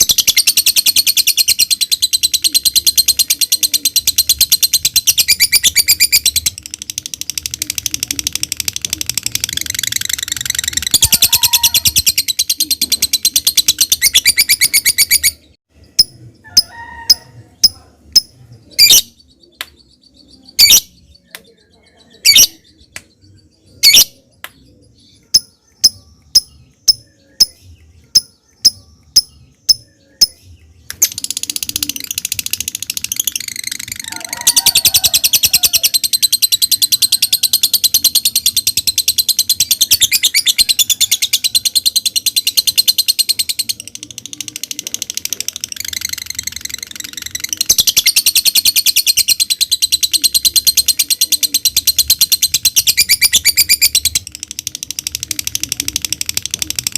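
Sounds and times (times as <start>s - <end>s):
bird rapid high chattering trill: 0.0s - 19.3s, 31.0s - 56.9s.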